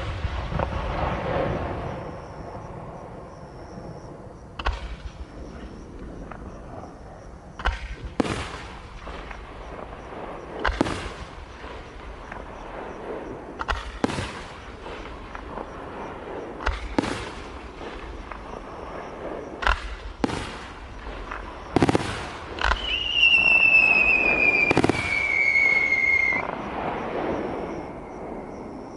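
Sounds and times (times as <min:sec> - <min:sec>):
fireworks bangs: 0:00.0 - 0:04.0, 0:07.6 - 0:28.9
shrill whistle falling in pitch: 0:22.7 - 0:26.4.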